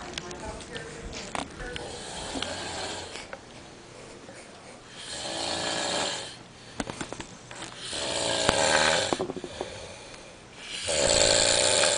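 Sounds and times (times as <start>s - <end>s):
man snoring: 1.9s - 3.2s, 5.0s - 6.4s, 7.8s - 10.0s, 10.6s - 11.9s.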